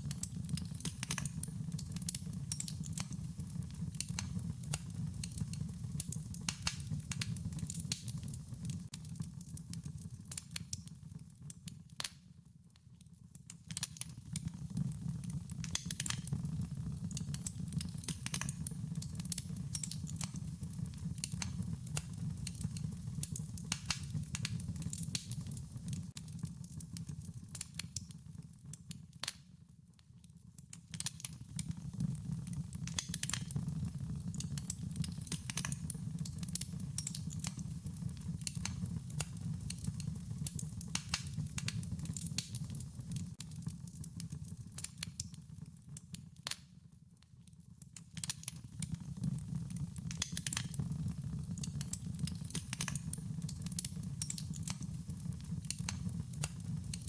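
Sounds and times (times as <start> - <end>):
wood fire crackling and popping: 0.0 - 57.0.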